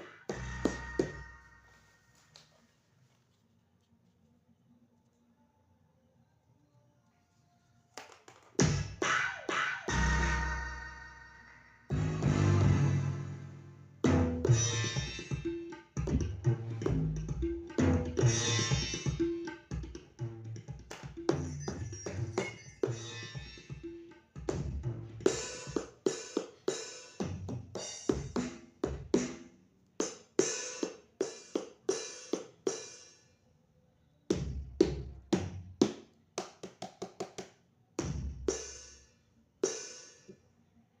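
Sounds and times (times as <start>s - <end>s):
electronic drum and cymbal hits: 0.0s - 1.4s, 11.9s - 33.0s.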